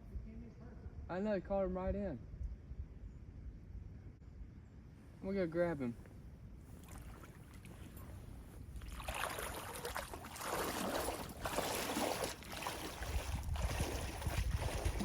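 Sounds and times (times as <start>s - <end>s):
water splashing and sloshing: 6.7s - 15.0s.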